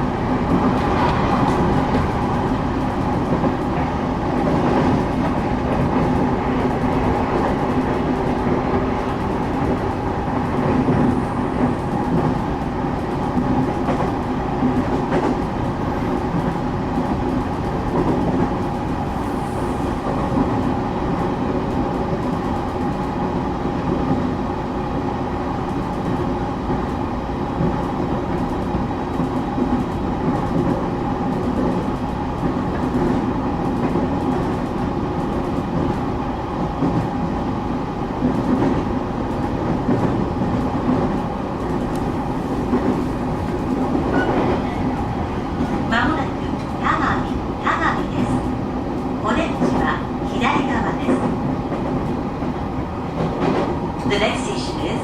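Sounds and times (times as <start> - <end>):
train running rumble: 0.0 - 55.0.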